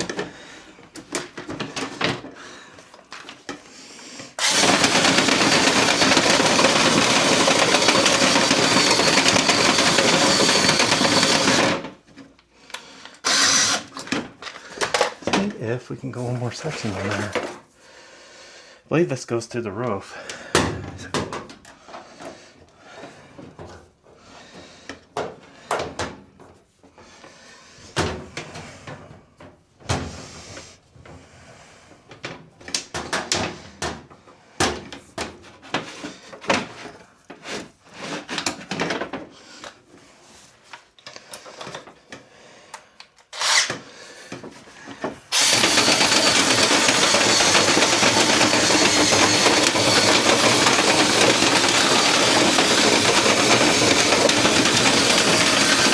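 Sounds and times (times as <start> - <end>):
power drill running: 4.4 - 11.9, 13.2 - 14.2, 43.3 - 43.9, 45.3 - 55.9.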